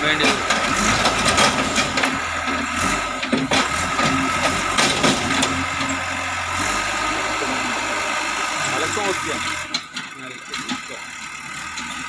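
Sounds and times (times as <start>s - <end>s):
diesel engine running: 0.0s - 12.0s
sharp knocks: 0.2s - 5.8s.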